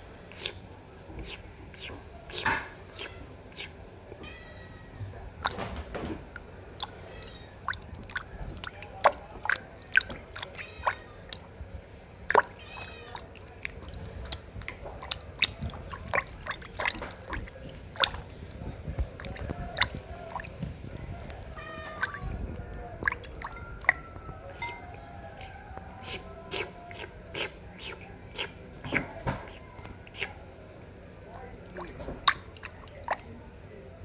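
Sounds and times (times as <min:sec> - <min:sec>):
kitten splashing water: 0:01.2 - 0:03.7, 0:05.3 - 0:30.3, 0:31.3 - 0:34.0
kitten mewing: 0:01.2 - 0:04.7, 0:06.3 - 0:11.6, 0:12.3 - 0:30.4.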